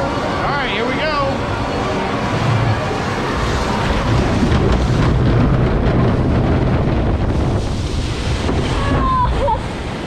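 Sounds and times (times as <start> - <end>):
water churning: 0.0 - 10.0
wind on microphone: 2.3 - 10.0.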